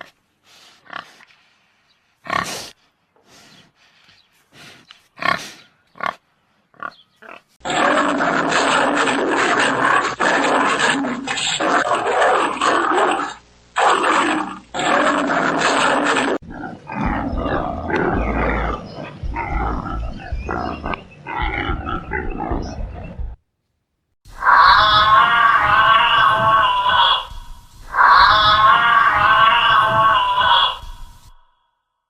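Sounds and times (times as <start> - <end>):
loud animal calls: 6.8 - 23.3, 24.3 - 31.5
deep rumble: 16.4 - 23.4.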